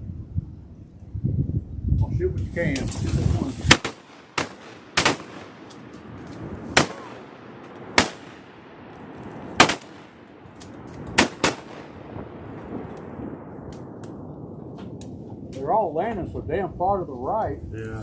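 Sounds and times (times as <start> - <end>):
shotgun shots with echo: 3.6 - 6.0, 6.7 - 8.8, 9.4 - 10.4, 11.1 - 12.4
faint distant shotgun shots: 3.7 - 6.1, 6.7 - 13.1.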